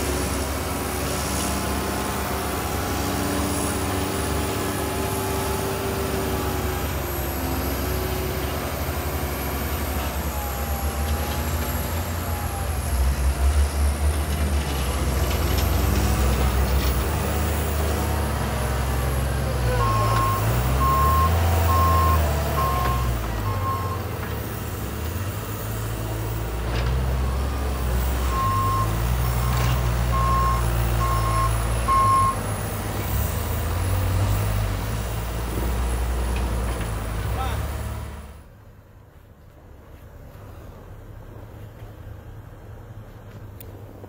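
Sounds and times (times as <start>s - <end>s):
heavy vehicle engines revving: 0.0s - 38.8s
reversing beeper: 8.5s - 13.8s, 19.4s - 24.2s, 27.2s - 32.4s.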